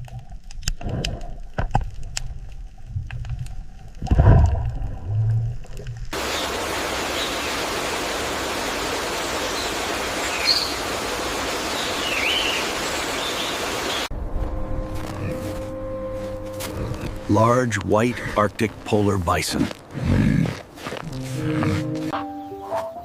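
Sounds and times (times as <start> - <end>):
bird chirps: 9.4 - 10.9, 11.6 - 14.1.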